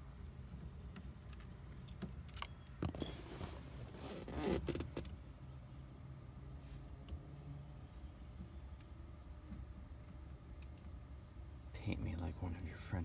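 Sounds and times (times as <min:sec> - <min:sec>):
metal tools rattling: 0:02.4 - 0:03.6
tools clattering: 0:02.4 - 0:03.7.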